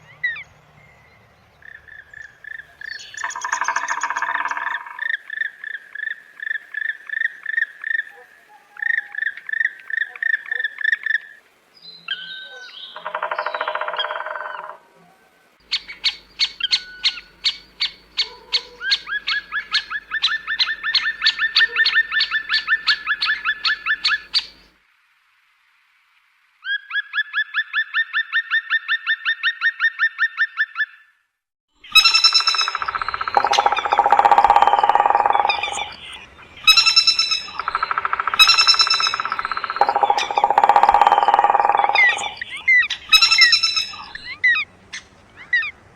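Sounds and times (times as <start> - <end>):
complex birdsong: 0.0 - 14.8, 15.6 - 24.8, 31.8 - 45.9
repeated bird calls: 1.6 - 11.4, 12.4 - 14.8, 15.6 - 24.7, 31.9 - 45.9
harsh bird call: 15.7 - 24.6, 31.9 - 45.8.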